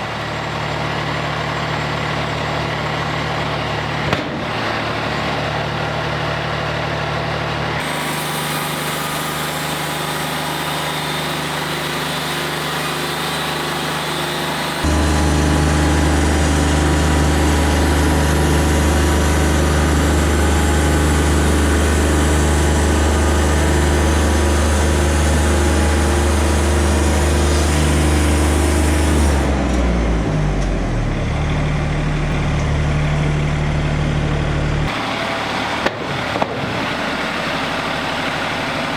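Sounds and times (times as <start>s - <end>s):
bandsaw mill engine running: 0.0s - 38.9s
saw blade cutting log: 7.8s - 29.6s.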